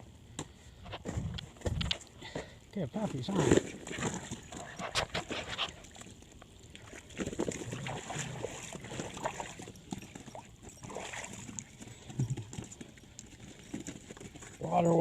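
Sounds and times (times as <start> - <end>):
puppies splashing through water: 3.2 - 15.0.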